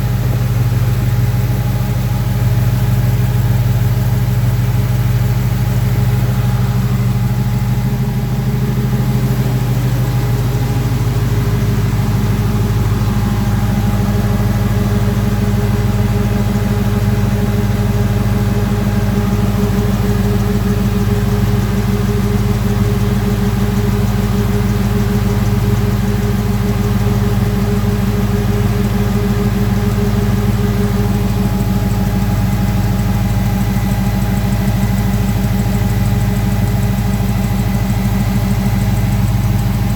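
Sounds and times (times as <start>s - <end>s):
car engine idling: 0.0s - 39.9s.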